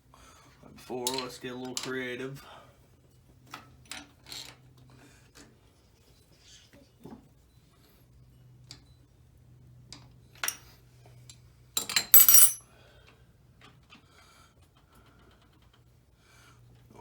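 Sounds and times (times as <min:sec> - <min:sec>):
metal tools clanking: 0:12.0 - 0:12.6.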